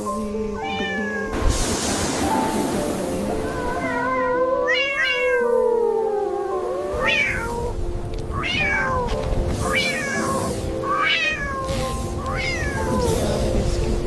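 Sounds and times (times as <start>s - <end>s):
background music: 0.0s - 14.0s
cat meowing: 0.7s - 1.3s, 3.8s - 13.1s.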